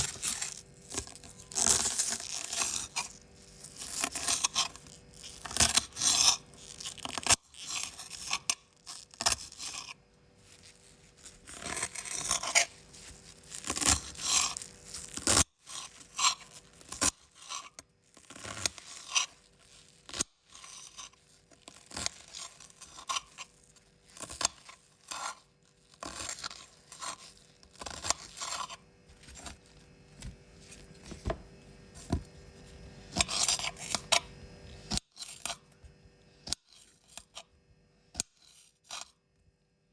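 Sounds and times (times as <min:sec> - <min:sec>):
knife cutting vegetables: 0:10.6 - 0:35.7.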